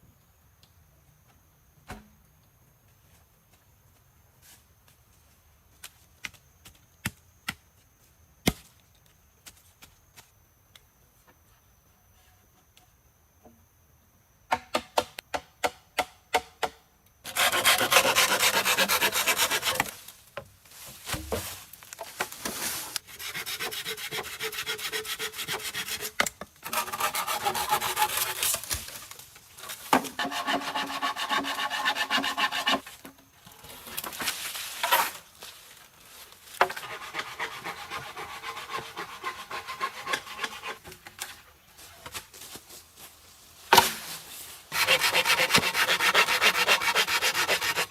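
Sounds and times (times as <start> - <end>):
rasp strokes on wood: 17.3 - 20.0, 23.1 - 28.6, 30.1 - 32.8, 36.7 - 40.8, 44.7 - 47.9.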